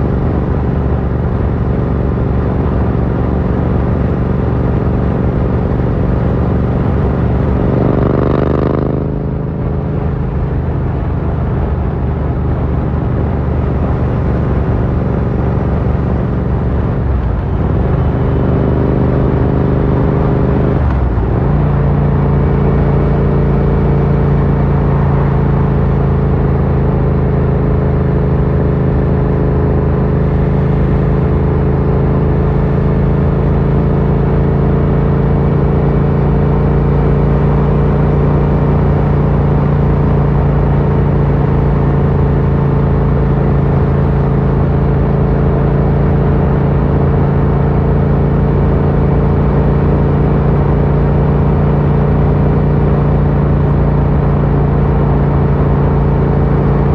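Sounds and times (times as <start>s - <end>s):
motorcycle engine running: 0.0s - 56.9s.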